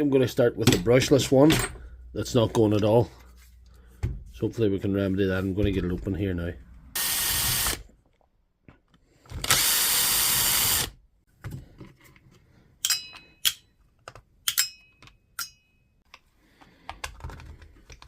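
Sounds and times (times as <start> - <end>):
cordless drill running: 7.0 - 7.8, 9.3 - 11.0
clicks of parts handled: 12.2 - 18.0.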